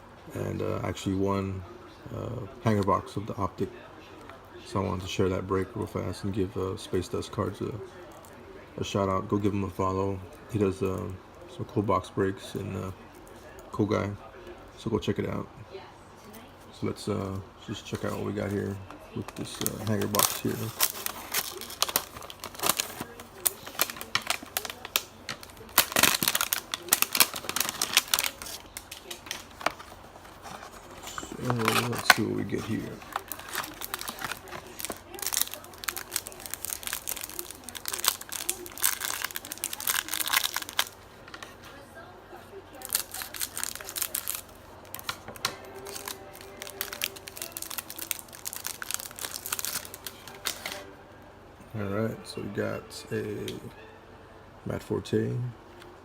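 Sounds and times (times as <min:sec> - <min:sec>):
plastic wrapping crinkling: 0:17.7 - 0:41.8, 0:42.7 - 0:50.9
trading cards shuffling: 0:17.9 - 0:41.6
packaging crackling and clicking: 0:18.0 - 0:41.6, 0:42.8 - 0:50.8.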